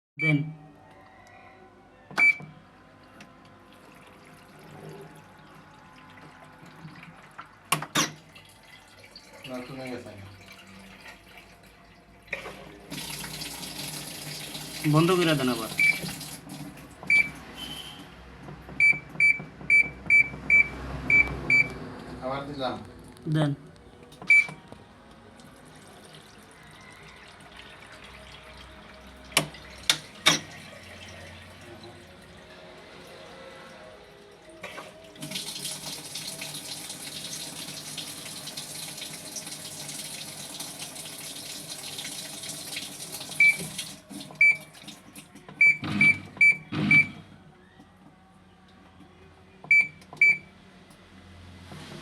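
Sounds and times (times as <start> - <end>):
washing machine beep: 0.2 - 0.6, 2.2 - 2.5, 14.8 - 16.4, 17.0 - 18.1, 18.8 - 21.8, 24.2 - 24.6, 43.2 - 44.8, 45.6 - 47.2, 49.7 - 50.5
water running in machine: 3.8 - 11.7, 12.3 - 16.9, 25.6 - 33.4, 34.0 - 45.3.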